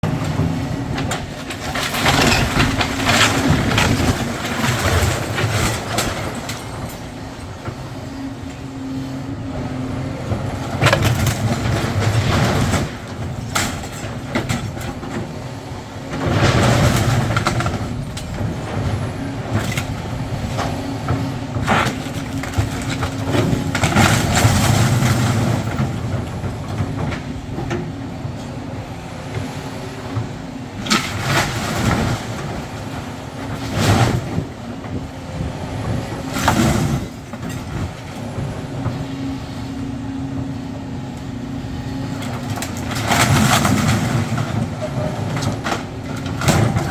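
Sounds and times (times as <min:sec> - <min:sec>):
debris crashing and falling: 0:00.0 - 0:07.6, 0:10.4 - 0:15.3, 0:16.0 - 0:28.4, 0:30.7 - 0:35.0, 0:42.1 - 0:46.9
excavator engine running: 0:00.0 - 0:46.9.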